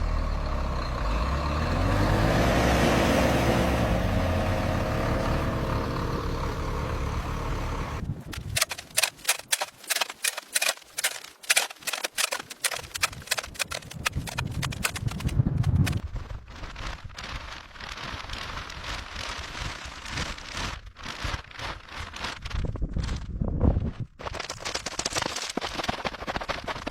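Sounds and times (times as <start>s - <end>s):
sharp clicks and knocks: 8.3s - 16.0s.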